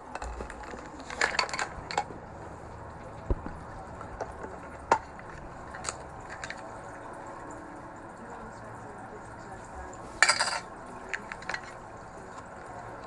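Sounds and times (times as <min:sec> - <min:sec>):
metal tin clicks and taps: 0:00.1 - 0:06.9, 0:10.2 - 0:12.7.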